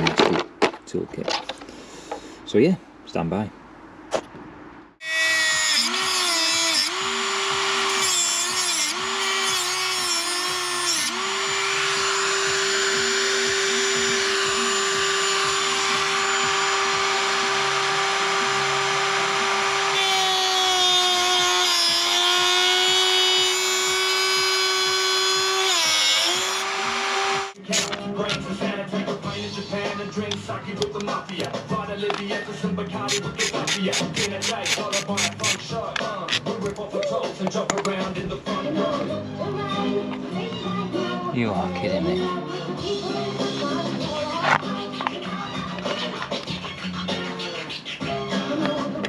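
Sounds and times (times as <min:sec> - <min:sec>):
power tool whining: 0:05.0 - 0:28.0.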